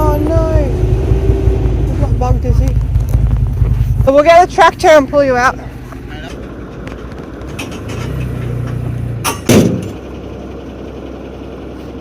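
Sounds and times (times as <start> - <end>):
truck engine running: 0.0 - 12.0
loud sharp bang: 9.2 - 10.0.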